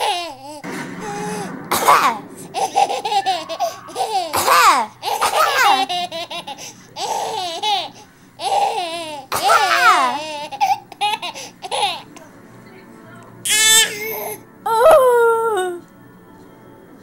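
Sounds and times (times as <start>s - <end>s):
baby laughing: 0.0s - 0.6s, 1.7s - 12.3s.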